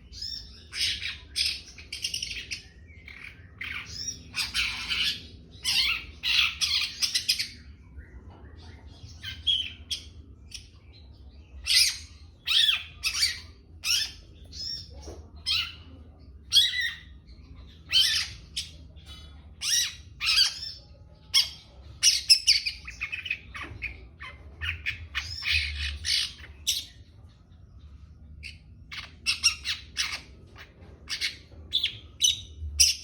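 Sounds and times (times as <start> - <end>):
thin bird chirps: 0.0 - 33.0.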